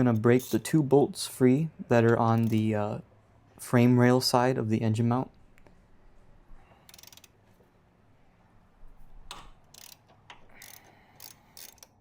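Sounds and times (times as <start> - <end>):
socket ratchet clicking: 2.4 - 2.7, 6.9 - 7.4, 9.3 - 12.0.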